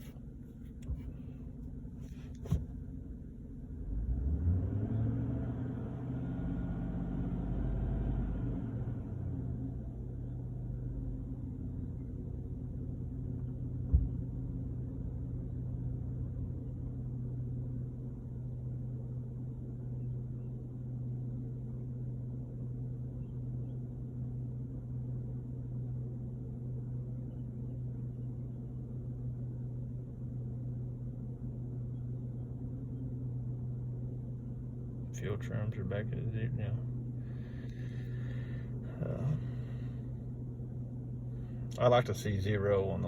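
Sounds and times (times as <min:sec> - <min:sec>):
pickup truck engine idling: 0:09.6 - 0:43.0.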